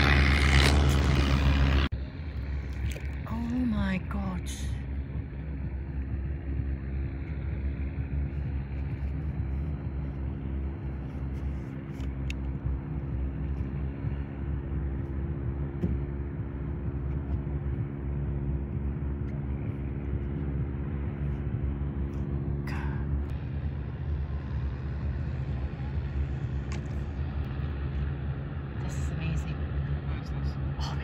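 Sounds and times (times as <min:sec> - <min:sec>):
engine droning steadily: 0:00.0 - 0:31.0.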